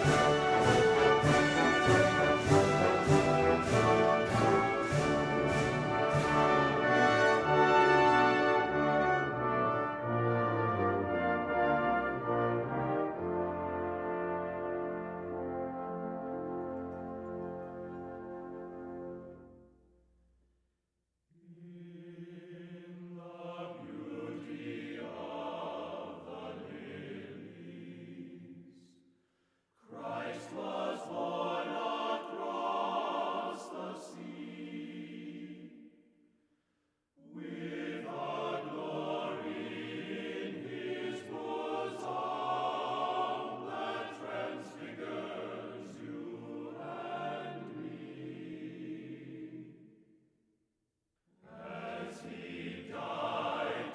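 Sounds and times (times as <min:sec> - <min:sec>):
choir singing: 0:00.0 - 0:19.7, 0:21.4 - 0:29.0, 0:29.8 - 0:36.0, 0:37.2 - 0:50.0, 0:51.4 - 0:53.9.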